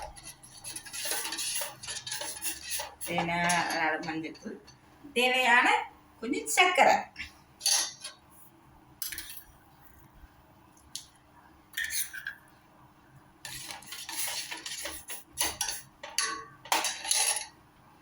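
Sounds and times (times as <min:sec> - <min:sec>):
spoon clinking against pots: 0:07.6 - 0:08.2, 0:14.1 - 0:17.5.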